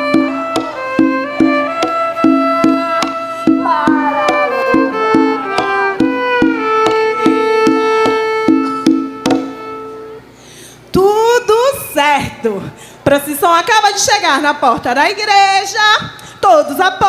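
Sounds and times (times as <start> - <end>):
steady beat: 0.0 - 10.1
fiddle melody: 0.0 - 10.4.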